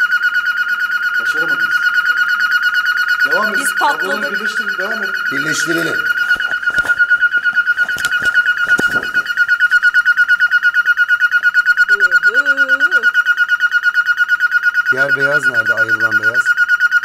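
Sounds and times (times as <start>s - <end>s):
fast electronic beeping: 0.0s - 17.0s.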